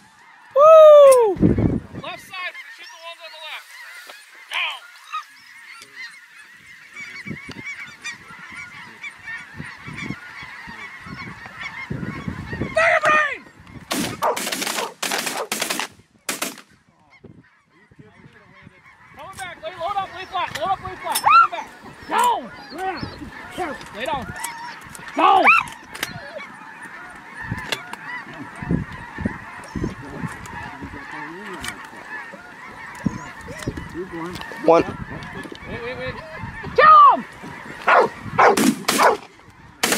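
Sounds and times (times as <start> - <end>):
geese honking: 0.0 - 39.9
wind buffeting microphone: 0.5 - 2.3, 6.6 - 14.4, 27.1 - 31.0, 32.6 - 39.9.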